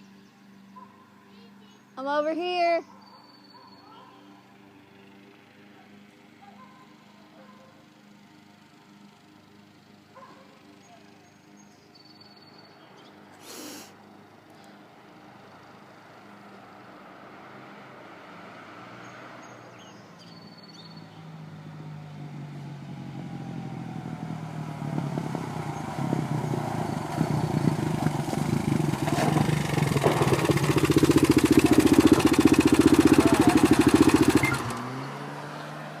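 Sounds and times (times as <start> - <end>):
vehicle engine approaching: 14.9 - 36.0
fast even engine clicking: 26.1 - 35.0.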